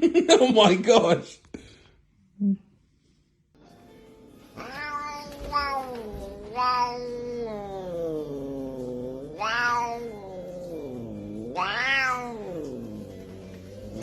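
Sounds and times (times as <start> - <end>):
cat yowling: 4.6 - 14.0.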